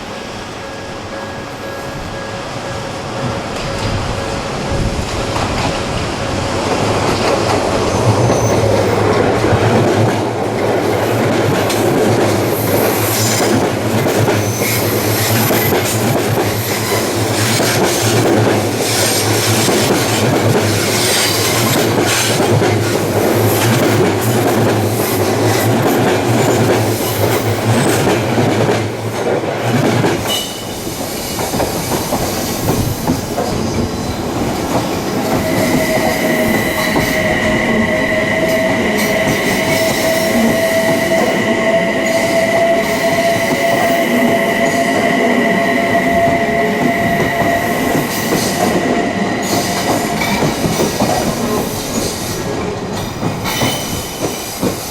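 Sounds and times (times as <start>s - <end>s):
train wheels clacking over rail joints: 3.2s - 37.5s, 38.1s - 54.9s.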